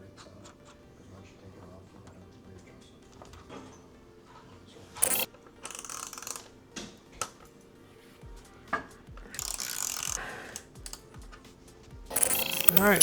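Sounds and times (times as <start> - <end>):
sharp click: 5.0 - 6.4, 12.1 - 13.0
ratchet-like whirr: 5.0 - 7.4, 8.3 - 11.4, 12.0 - 13.0
clicks and knocks on bicycle: 8.2 - 13.0.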